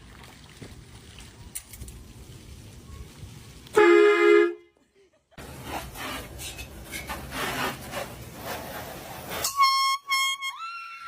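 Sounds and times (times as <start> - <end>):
air horn blasts: 3.8 - 4.6, 9.4 - 10.6.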